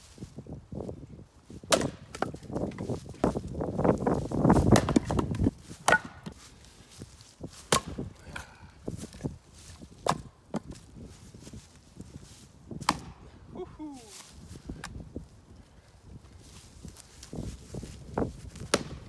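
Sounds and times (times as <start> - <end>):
maul striking wood: 1.7 - 2.8, 4.6 - 6.4, 7.7 - 8.4, 10.0 - 10.8, 12.8 - 13.1, 18.6 - 19.0.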